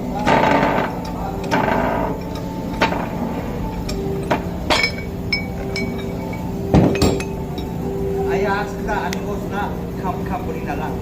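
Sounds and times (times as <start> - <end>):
hammer striking metal: 0.0 - 8.1
steady low hum: 0.0 - 11.0.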